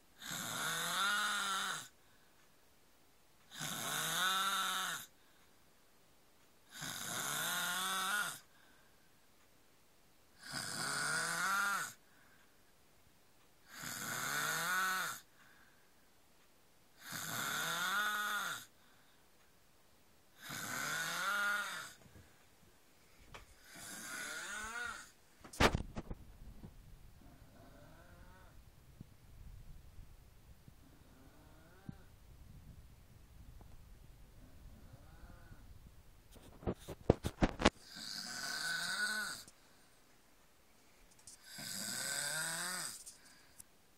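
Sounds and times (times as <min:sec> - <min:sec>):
man snoring: 0:00.2 - 0:01.9, 0:03.5 - 0:05.1, 0:06.7 - 0:08.5, 0:10.4 - 0:12.0, 0:13.7 - 0:15.3, 0:17.0 - 0:18.7, 0:20.4 - 0:22.0, 0:23.6 - 0:25.2, 0:27.4 - 0:28.6, 0:31.0 - 0:32.1, 0:34.8 - 0:35.6, 0:37.8 - 0:39.5, 0:41.4 - 0:43.2.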